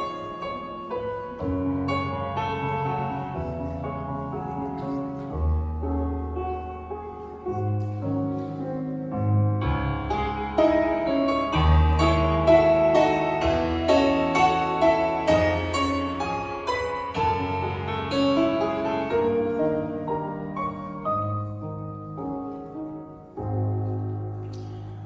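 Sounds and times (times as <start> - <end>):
slow piano chords: 0.0 - 25.0.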